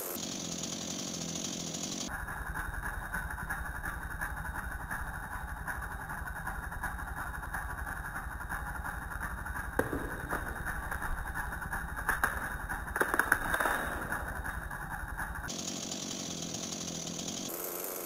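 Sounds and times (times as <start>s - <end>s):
chainsaw engine idling: 0.0s - 18.0s.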